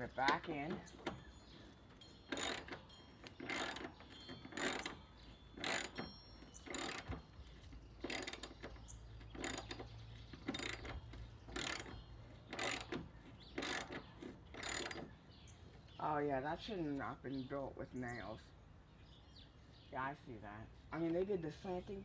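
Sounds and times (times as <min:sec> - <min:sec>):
socket ratchet clicking: 0:02.3 - 0:15.1.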